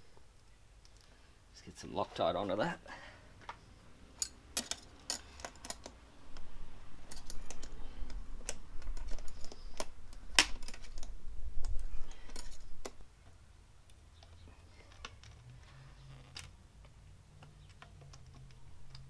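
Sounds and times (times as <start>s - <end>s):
metal hardware clicks and taps: 4.2s - 15.4s.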